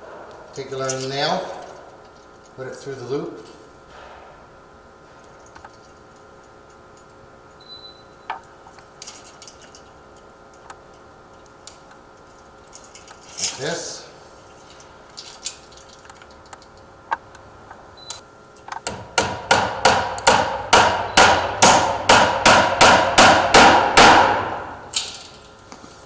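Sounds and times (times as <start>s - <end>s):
hammer blows on nail: 18.9s - 24.9s.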